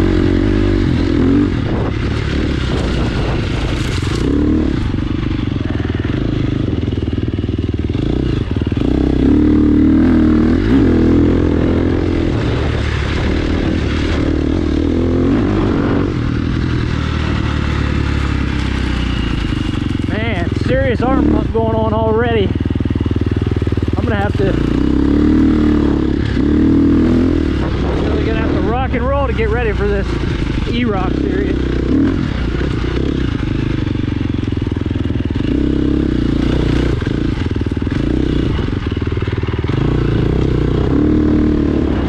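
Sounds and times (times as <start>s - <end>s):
motorcycle engine revving: 0.0s - 42.0s.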